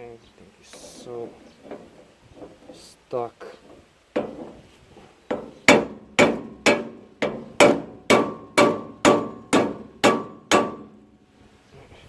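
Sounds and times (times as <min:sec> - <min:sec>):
hammer striking metal: 0:05.3 - 0:11.1.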